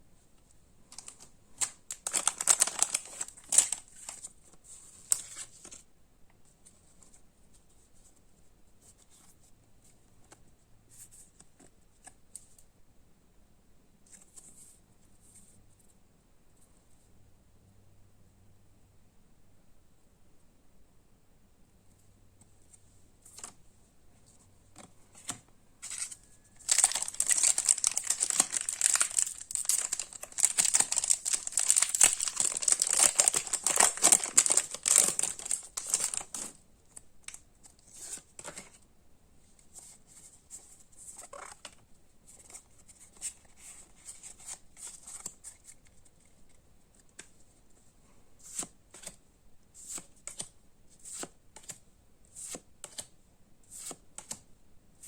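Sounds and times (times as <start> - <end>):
packaging torn and crinkled: 0.9 - 4.2, 25.9 - 36.6
cards clicking and rustling: 0.9 - 4.3, 24.8 - 38.8, 49.9 - 51.8, 52.4 - 53.1, 53.8 - 54.4.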